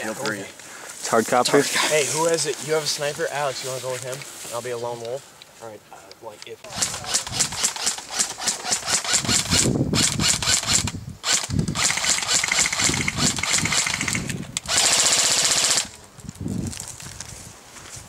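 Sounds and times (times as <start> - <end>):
footsteps crunching dry leaves: 0.3 - 5.7, 16.0 - 18.0
airsoft gun full-auto burst: 6.7 - 16.0.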